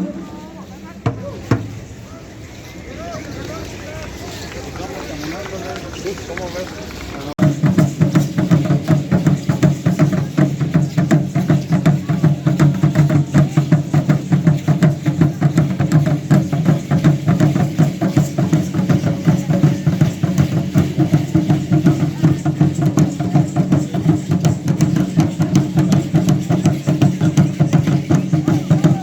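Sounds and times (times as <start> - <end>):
deep booming drums: 7.4 - 29.0.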